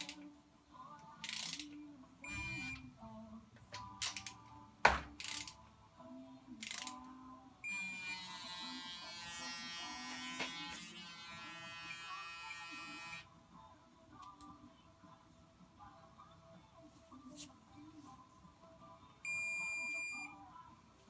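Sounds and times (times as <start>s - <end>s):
tool clicks and knocks: 3.8s - 5.6s
power tool motor buzzing: 7.7s - 13.2s.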